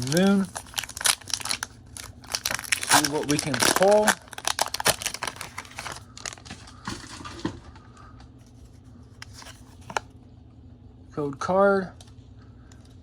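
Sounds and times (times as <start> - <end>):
foil wrapper crinkling and tearing: 0.0 - 7.5.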